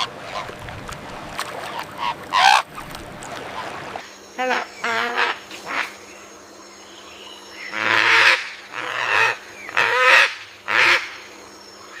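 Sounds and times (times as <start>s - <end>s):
goose honking: 1.7s - 2.7s.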